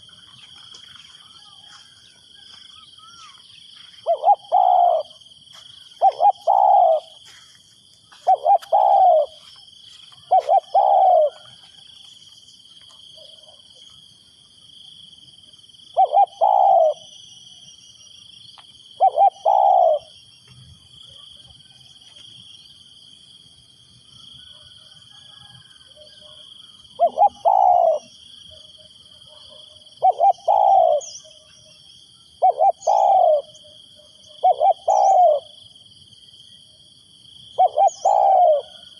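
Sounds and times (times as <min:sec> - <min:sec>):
dove cooing: 0:04.0 - 0:05.2, 0:05.9 - 0:07.2, 0:08.2 - 0:09.5, 0:10.2 - 0:11.8, 0:15.9 - 0:17.1, 0:19.0 - 0:20.1, 0:27.0 - 0:28.1, 0:30.0 - 0:31.3, 0:32.4 - 0:35.6, 0:37.6 - 0:38.9.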